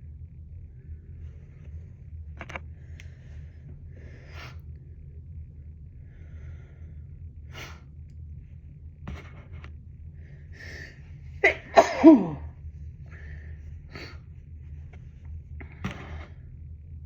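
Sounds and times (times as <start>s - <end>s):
person sneezing: 11.4s - 12.5s.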